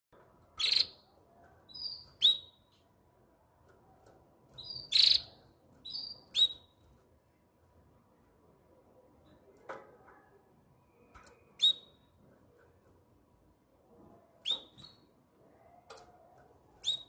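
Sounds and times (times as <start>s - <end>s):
canary calls and chirps: 0.4s - 2.8s, 4.1s - 6.9s, 10.8s - 12.7s, 14.0s - 17.0s.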